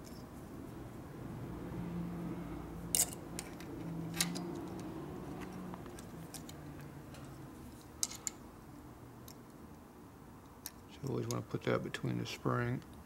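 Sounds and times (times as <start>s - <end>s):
light metallic clicks of tools: 2.9s - 8.4s.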